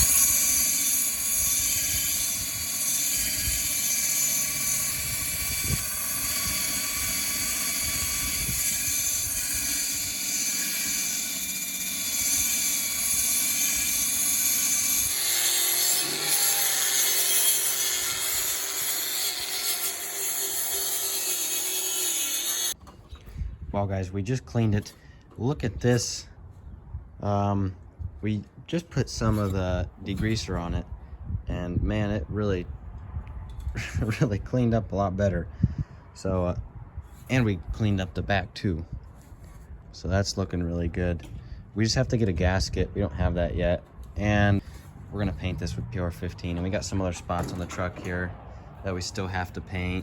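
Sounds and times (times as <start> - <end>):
power sander sanding metal: 0.0 - 22.8.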